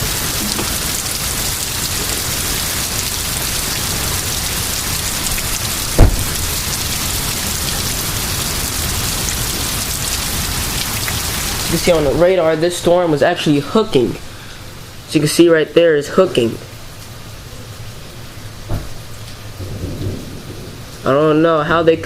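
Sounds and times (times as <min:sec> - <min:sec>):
heavy rain pouring: 0:00.0 - 0:22.0
sharp thump: 0:06.0 - 0:06.4.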